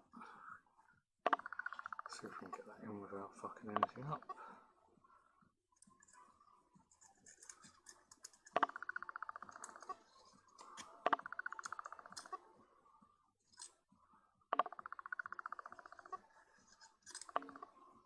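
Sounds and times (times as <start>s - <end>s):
lens parts clicking: 16.7s - 17.6s.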